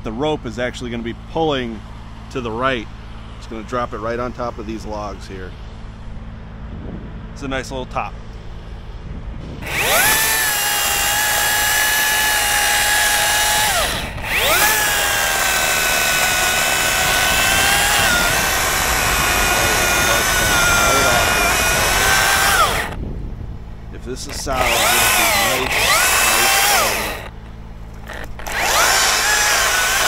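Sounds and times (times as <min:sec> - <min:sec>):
chainsaw cutting wood: 0:09.6 - 0:23.0, 0:24.3 - 0:30.0.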